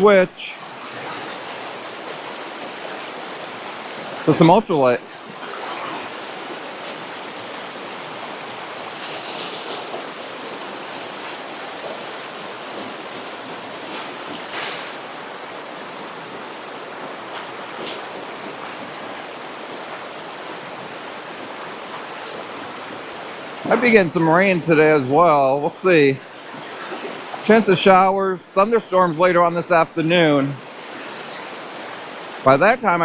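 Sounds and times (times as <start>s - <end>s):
creek water rushing over rocks: 0.0s - 33.0s.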